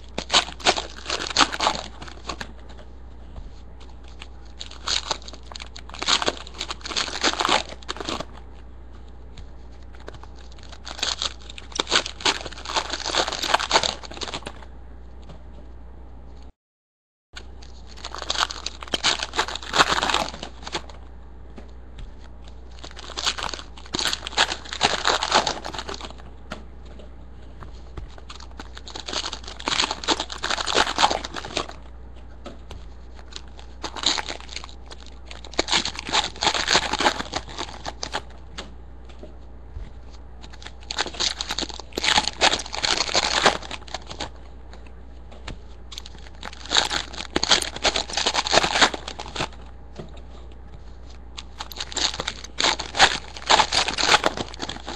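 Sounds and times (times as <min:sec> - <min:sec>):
wrappers tearing and crinkling: 0:00.0 - 0:02.7, 0:03.9 - 0:08.4, 0:09.8 - 0:14.6, 0:17.6 - 0:21.0, 0:22.4 - 0:26.2, 0:28.1 - 0:31.9, 0:33.0 - 0:38.4, 0:40.4 - 0:44.4, 0:45.9 - 0:49.6, 0:51.1 - 0:54.9.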